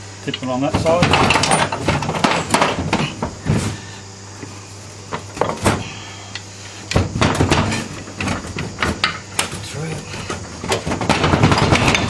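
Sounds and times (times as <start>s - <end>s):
sharp knocks: 0.8s - 3.7s, 6.9s - 12.0s
metal clunks and scrapes: 6.9s - 12.0s.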